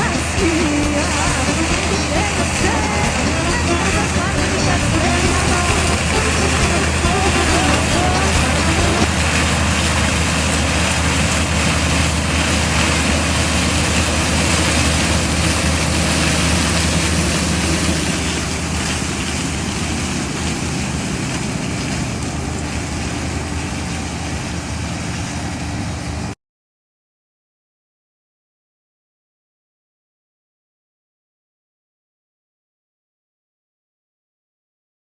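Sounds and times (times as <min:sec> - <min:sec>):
combine harvester running: 0:00.0 - 0:26.4.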